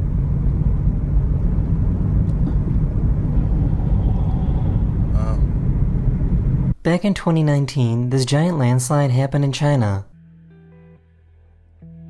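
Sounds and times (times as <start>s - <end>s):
car road and engine rumble: 0.0s - 6.8s.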